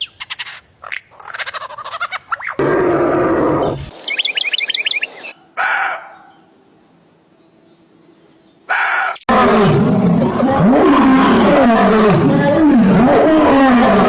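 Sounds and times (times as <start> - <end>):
short falling bird chirps: 3.9 - 6.4.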